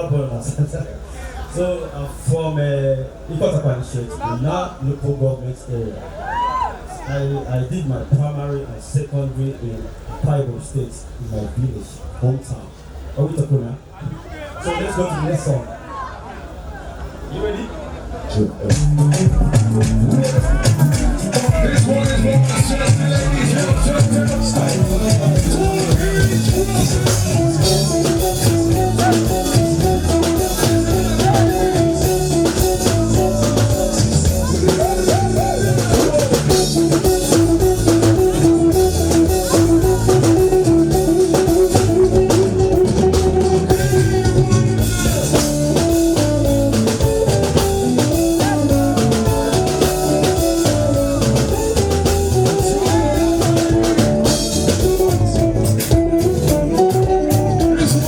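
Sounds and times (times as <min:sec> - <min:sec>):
live band playing: 0:18.5 - 0:58.0
drum kit beat: 0:18.7 - 0:58.0
electric guitar: 0:18.7 - 0:58.0.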